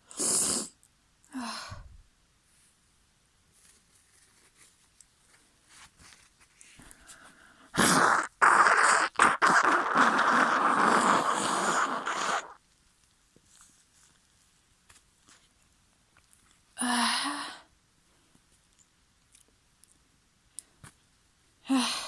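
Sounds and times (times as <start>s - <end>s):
person blowing nose: 0.0s - 0.8s, 7.7s - 12.6s.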